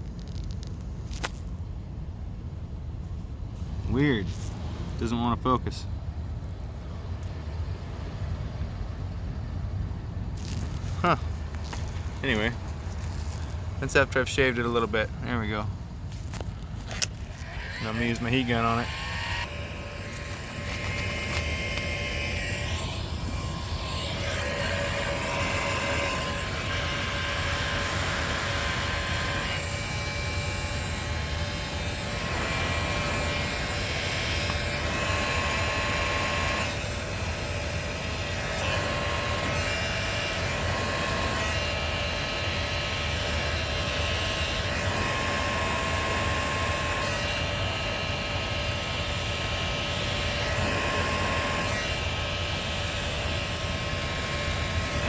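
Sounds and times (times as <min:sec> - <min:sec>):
motor whine: 0:06.4 - 0:55.0
heat gun blowing: 0:16.2 - 0:55.0.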